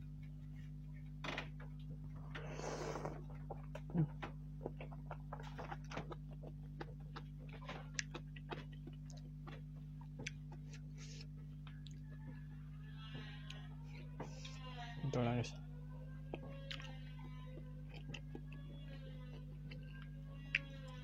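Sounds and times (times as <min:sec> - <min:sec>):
steady low hum: 0:00.0 - 0:21.0
close-miked chewing: 0:01.8 - 0:12.5, 0:16.1 - 0:21.0
wet mouth clicks and smacks: 0:04.6 - 0:10.9.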